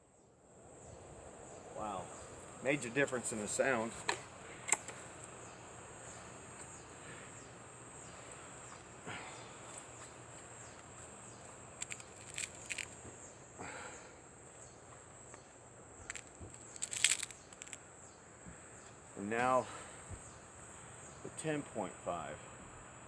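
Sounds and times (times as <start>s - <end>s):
insect chirring: 10.6s - 13.4s, 16.0s - 18.0s
faint clicks and handling noises: 11.8s - 13.1s, 16.1s - 17.8s.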